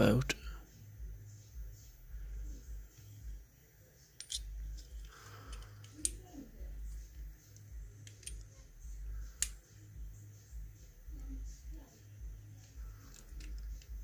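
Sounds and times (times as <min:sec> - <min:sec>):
metal lock parts clicking: 0:04.2 - 0:06.2, 0:08.0 - 0:08.5, 0:13.0 - 0:14.0.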